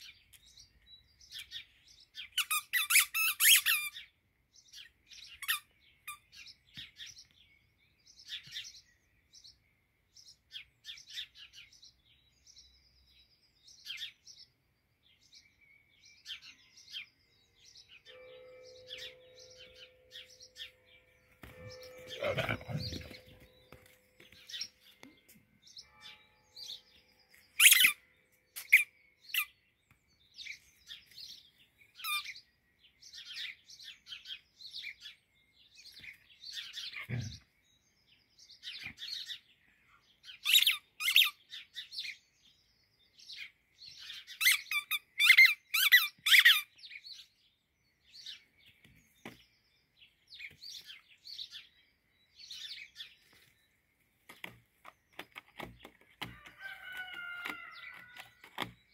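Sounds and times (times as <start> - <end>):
squeaky rubber toy ball: 2.4 - 3.9, 27.6 - 28.0.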